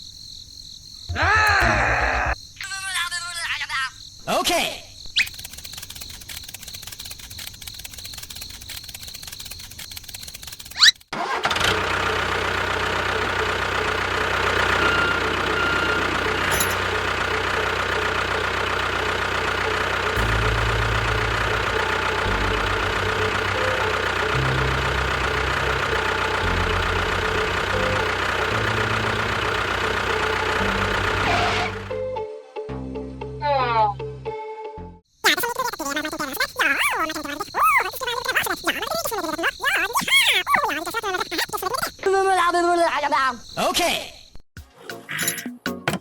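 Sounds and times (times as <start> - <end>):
crickets chirping: 0.0 - 11.1, 13.1 - 30.8, 35.0 - 44.4
click: 5.2 - 11.1
small motor humming: 12.2 - 31.9.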